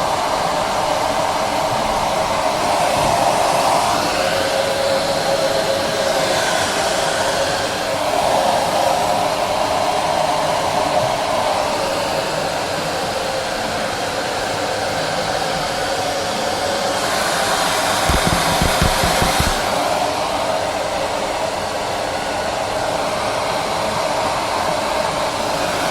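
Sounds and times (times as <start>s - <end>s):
hair dryer blowing air: 0.0s - 12.9s, 15.5s - 25.9s
low air thumps: 18.1s - 19.6s.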